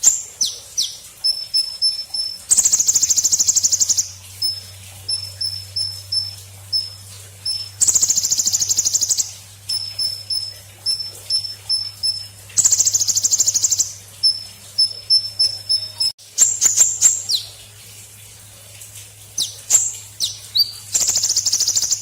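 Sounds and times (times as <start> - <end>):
grasshopper buzzing trill: 0.0 - 17.2
grasshopper chirping: 0.0 - 17.4, 19.4 - 22.0
low steady hum: 0.0 - 22.0.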